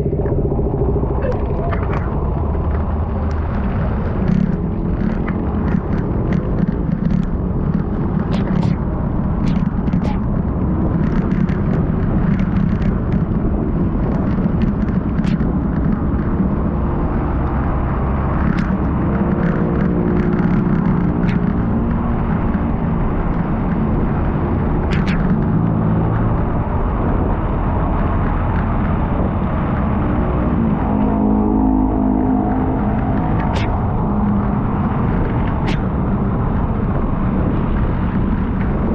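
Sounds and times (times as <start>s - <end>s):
sharp ticks: 0.0s - 16.4s, 18.3s - 22.6s, 24.2s - 26.3s
vehicle running: 0.0s - 38.9s
wind rumble on microphone: 0.0s - 38.9s.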